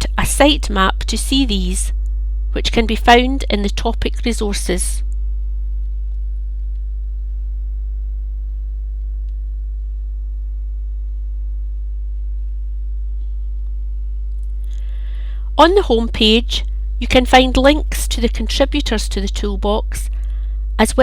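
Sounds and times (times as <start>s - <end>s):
low electrical hum: 0.0s - 21.0s.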